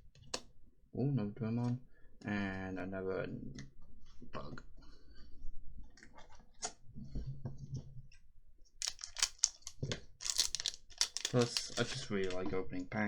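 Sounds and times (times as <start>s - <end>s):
cards clicking and sliding: 8.8s - 12.4s
cards crackling rustles: 8.8s - 12.5s.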